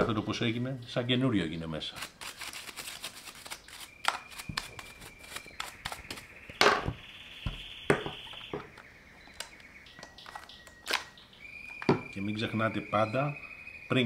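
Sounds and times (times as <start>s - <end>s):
clicks and knocks of handled parts: 3.4s - 6.9s, 8.5s - 11.1s
thin steady high whine: 3.8s - 14.0s.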